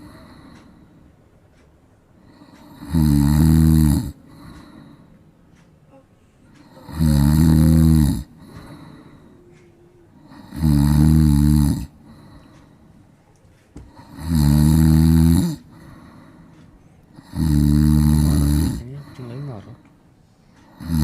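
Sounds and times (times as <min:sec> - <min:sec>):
cat snoring: 0:02.3 - 0:04.4, 0:06.6 - 0:09.0, 0:10.2 - 0:12.3, 0:13.9 - 0:15.8, 0:17.2 - 0:19.6, 0:20.7 - 0:21.0
cat breathing quietly: 0:15.6 - 0:17.3.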